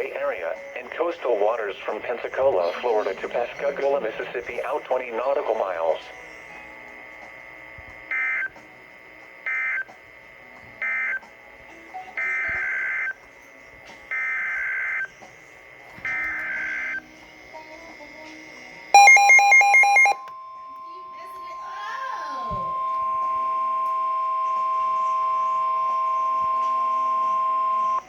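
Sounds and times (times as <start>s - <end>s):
rapid electronic alert beeping: 8.1s - 8.6s, 9.5s - 9.9s, 10.8s - 11.3s, 12.2s - 13.2s, 14.1s - 15.1s, 16.0s - 17.0s, 19.0s - 28.0s.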